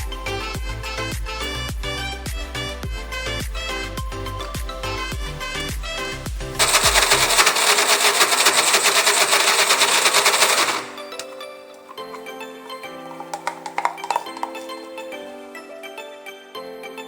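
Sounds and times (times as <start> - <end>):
background music: 0.0 - 17.0
electric blender grinding: 6.6 - 11.4.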